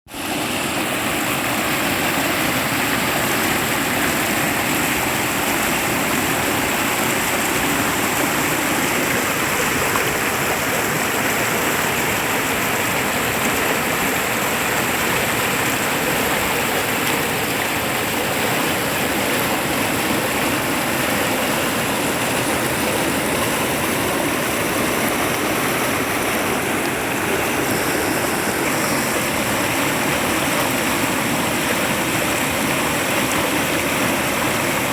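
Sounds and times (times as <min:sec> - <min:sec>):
river water rushing over rocks: 0:00.1 - 0:34.9.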